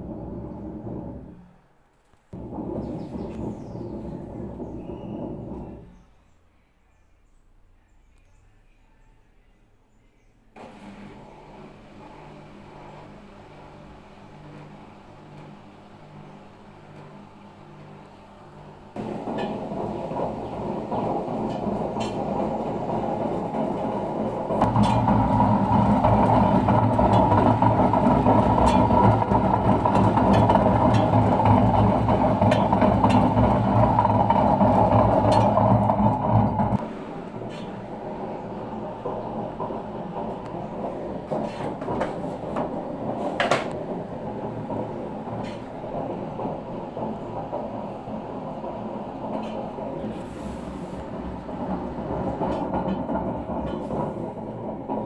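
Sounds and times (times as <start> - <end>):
washing machine drum grinding rumble: 0.0 - 1.4, 2.4 - 6.0, 19.0 - 55.0.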